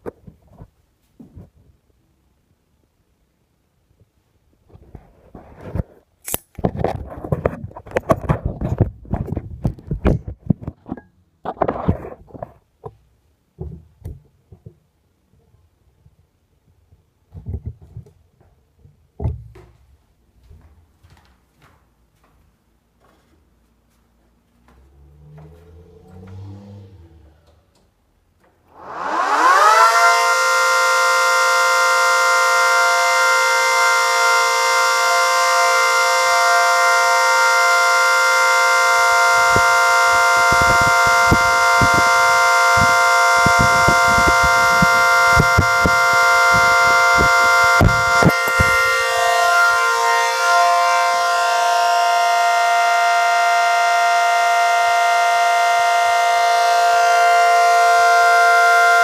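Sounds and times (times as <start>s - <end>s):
siren three-note chord: 24.9s - 27.7s, 28.7s - 59.0s.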